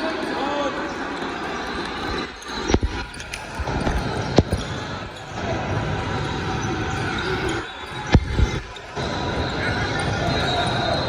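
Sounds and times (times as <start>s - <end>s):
indistinct voices: 0.0s - 11.0s
large hall background noise: 0.0s - 11.0s
basketball bouncing on gym floor: 2.6s - 4.8s, 8.0s - 8.8s.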